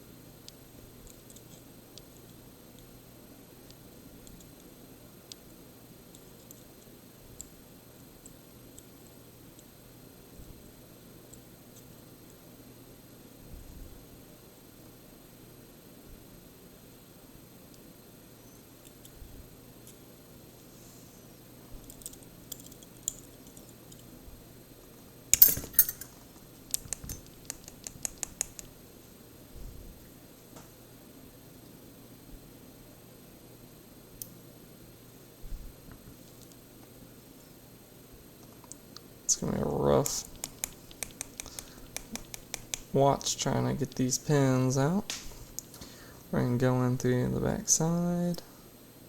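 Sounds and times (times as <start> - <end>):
metallic rattle: 25.4 - 26.2
small metal clicks and taps: 40.0 - 42.9
quick ticks: 40.3 - 42.9.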